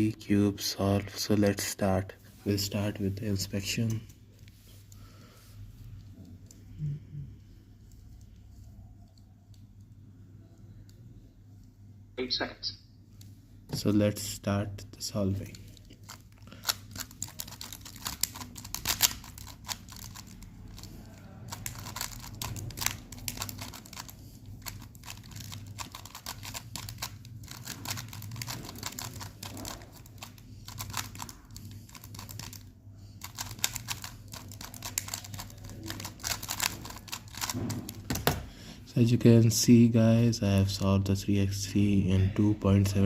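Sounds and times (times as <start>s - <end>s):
faint low hum: 0.0s - 43.0s
puzzle cube plastic clicking: 15.5s - 32.6s, 33.2s - 37.6s.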